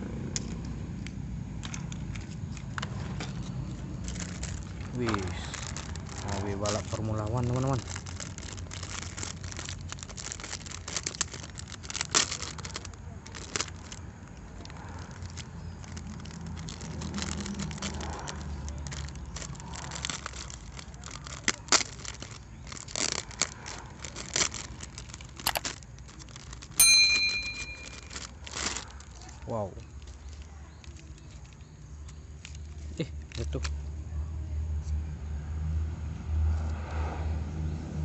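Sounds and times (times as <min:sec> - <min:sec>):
short sharp ring: 0:26.8 - 0:28.1.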